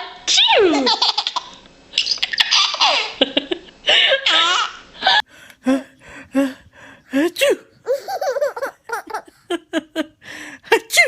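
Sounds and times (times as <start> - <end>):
baby laughing: 2.3 - 3.2, 7.4 - 10.0.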